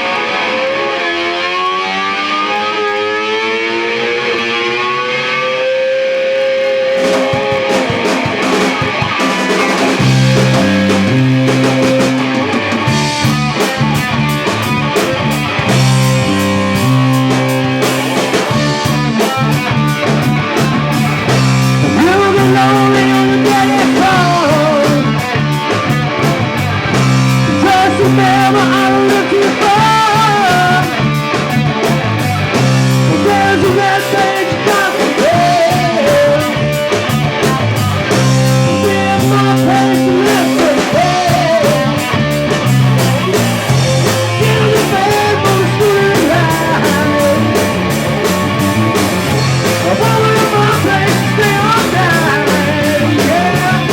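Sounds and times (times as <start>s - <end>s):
electric guitar: 0.0s - 53.9s
rock music: 0.0s - 53.9s
drums: 4.2s - 53.9s
person singing: 21.8s - 25.4s, 27.4s - 31.1s, 33.1s - 36.7s, 38.6s - 42.2s, 44.0s - 48.9s, 49.6s - 53.9s.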